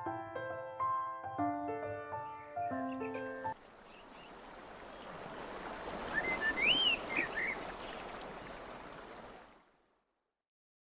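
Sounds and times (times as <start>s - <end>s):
birds chirping: 2.3s - 8.6s
flowing water: 3.0s - 10.1s.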